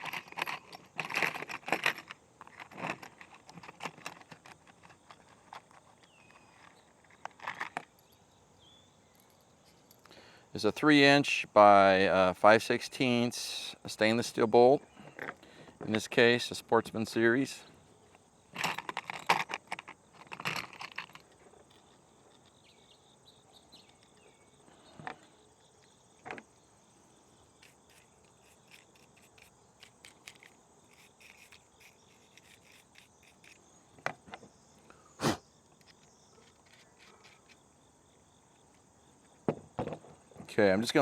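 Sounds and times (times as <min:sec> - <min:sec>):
small metal hardware clicking: 0:27.6 - 0:33.7.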